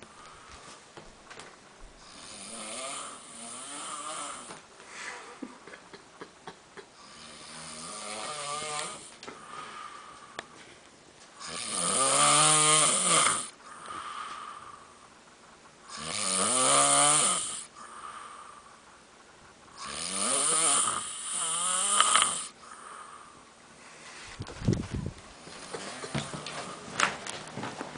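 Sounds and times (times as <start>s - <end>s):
person snoring: 2.0s - 5.3s, 7.0s - 10.1s, 11.4s - 14.9s, 15.9s - 18.7s, 19.8s - 23.4s.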